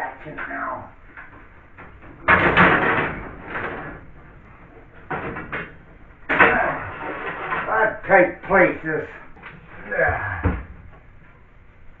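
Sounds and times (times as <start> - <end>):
cable scraping and rustling: 3.3 - 8.0.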